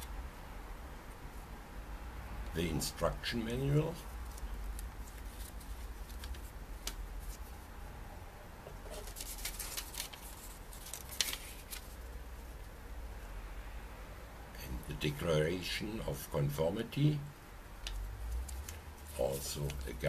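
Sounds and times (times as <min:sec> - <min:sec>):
paper leaflets rustling: 0:03.8 - 0:07.6, 0:08.8 - 0:12.2, 0:18.2 - 0:20.0.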